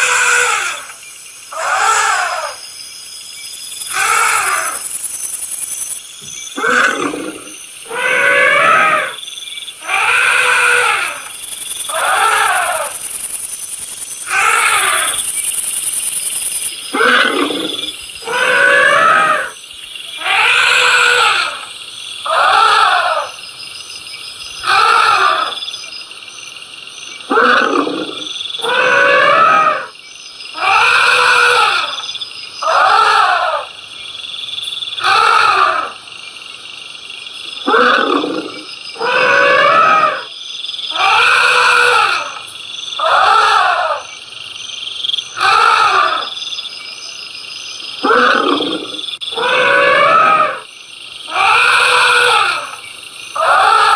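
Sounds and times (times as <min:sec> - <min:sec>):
animal calling: 0:00.0 - 0:02.6, 0:03.8 - 0:05.0, 0:06.2 - 0:09.2, 0:09.8 - 0:13.4, 0:14.2 - 0:16.0, 0:16.6 - 0:23.4, 0:24.6 - 0:25.6, 0:27.2 - 0:29.9, 0:30.5 - 0:33.8, 0:35.0 - 0:36.0, 0:37.6 - 0:40.3, 0:40.9 - 0:44.1, 0:45.3 - 0:46.4, 0:48.0 - 0:50.7, 0:51.3 - 0:52.8, 0:53.4 - 0:53.9.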